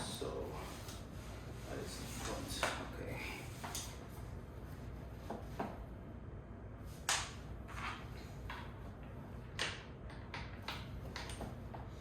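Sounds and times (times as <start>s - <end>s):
chair parts knocking and clicking: 9.5s - 11.8s.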